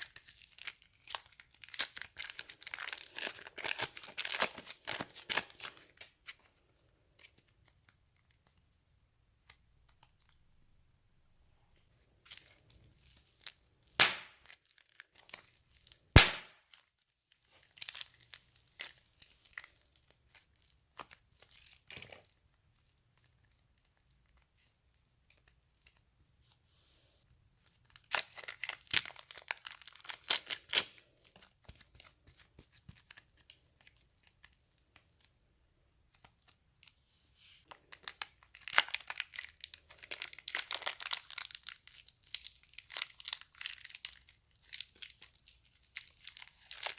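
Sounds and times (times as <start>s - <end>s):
slime crinkling and crackling: 0.0s - 6.0s, 12.3s - 26.0s, 27.6s - 35.3s, 37.6s - 46.9s.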